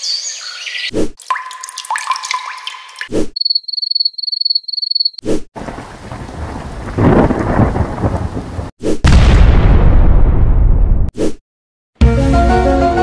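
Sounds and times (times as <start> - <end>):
crickets chirping: 3.4 - 5.2
rain falling: 5.6 - 8.7
loud explosion booming: 5.6 - 11.1
thunder rumbling: 5.6 - 11.1.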